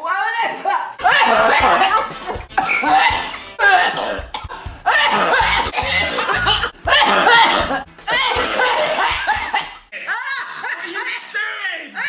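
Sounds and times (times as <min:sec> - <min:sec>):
woman coughing hard: 0:01.0 - 0:09.9.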